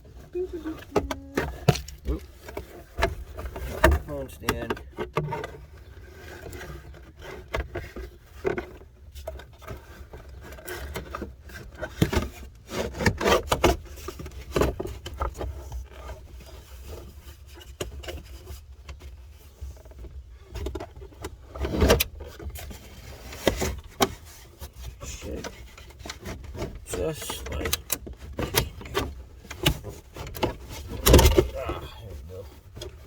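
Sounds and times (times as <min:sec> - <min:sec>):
plastic trim knocking and scraping: 0:00.6 - 0:05.7, 0:20.6 - 0:33.0.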